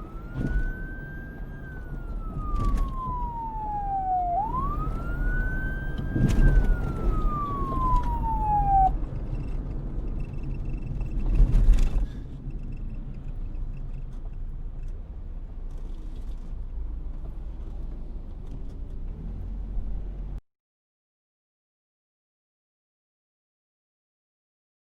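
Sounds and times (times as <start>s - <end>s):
police siren wail: 0.0s - 9.4s
low steady rumble: 0.0s - 20.4s.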